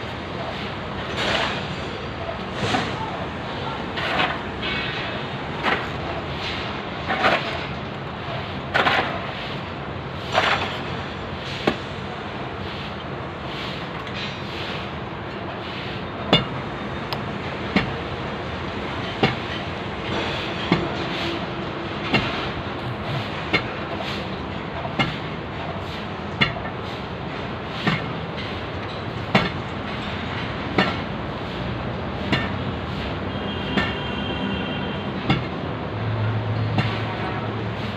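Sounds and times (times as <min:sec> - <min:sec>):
steady background hum: 0:00.0 - 0:37.9
steady background rumble: 0:00.0 - 0:37.9
hammer blows: 0:32.2 - 0:35.6.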